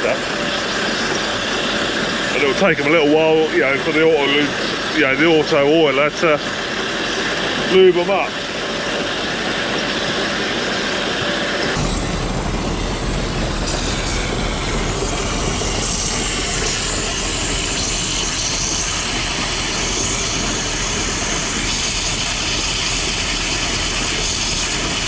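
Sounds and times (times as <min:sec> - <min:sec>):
diesel engine ticking over: 0:00.0 - 0:25.0
deep steady hum: 0:11.7 - 0:25.0.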